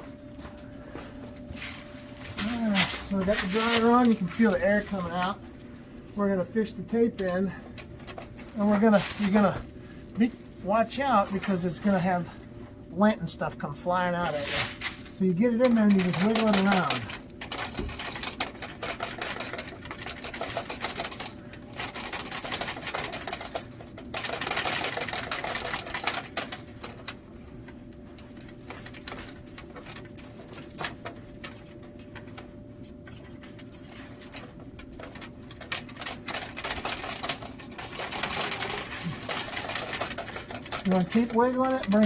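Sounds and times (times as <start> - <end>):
fish tape rattling in vent duct: 0.7 - 42.0.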